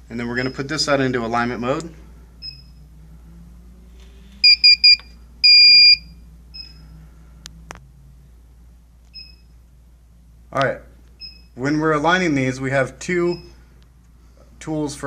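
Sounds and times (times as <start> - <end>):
faint beep: 2.4 - 2.8, 4.4 - 6.9
quick beeps: 2.4 - 2.8, 4.4 - 6.8.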